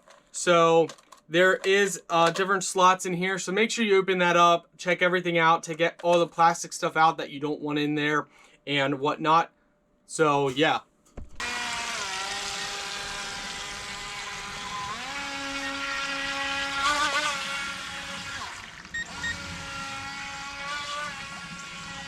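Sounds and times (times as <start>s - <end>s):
toy boat electric motor whining: 11.4s - 22.0s.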